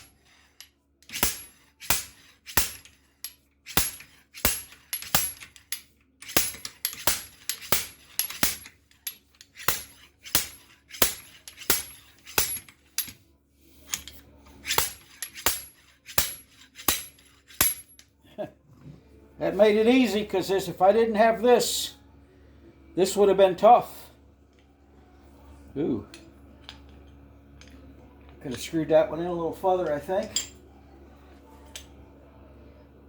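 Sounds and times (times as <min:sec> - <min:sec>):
slide hammer clanking on metal: 0:01.0 - 0:13.2, 0:29.8 - 0:30.6.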